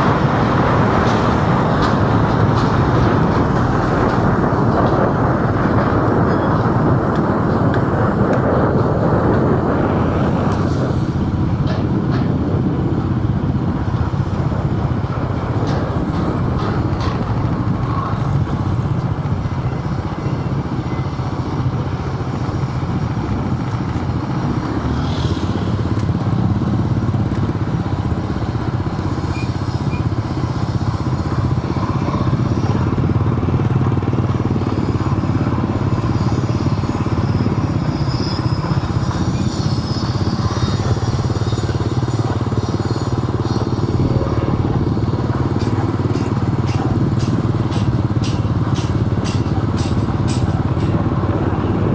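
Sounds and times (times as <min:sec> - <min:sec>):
vehicle engine and road rumble: 0:00.0 - 0:51.9.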